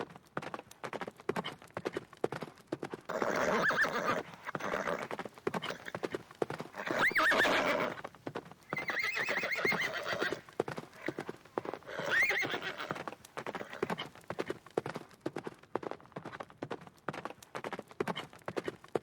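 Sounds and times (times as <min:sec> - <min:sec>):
clatter of hooves: 0:00.0 - 0:19.0
horse whinnying: 0:03.1 - 0:08.1, 0:08.7 - 0:14.2.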